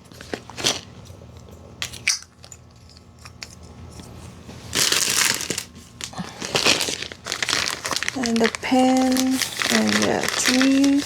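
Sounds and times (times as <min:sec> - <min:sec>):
plastic packaging crinkling: 0:04.6 - 0:11.0.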